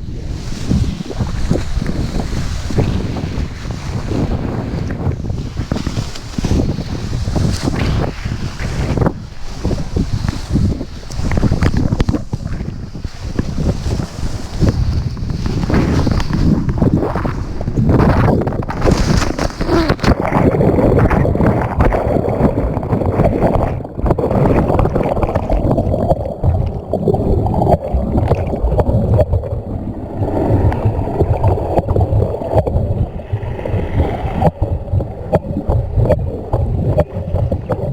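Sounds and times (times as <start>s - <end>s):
water sloshing and gurgling: 0.0s - 37.9s
buffeting low rumble: 20.2s - 37.9s.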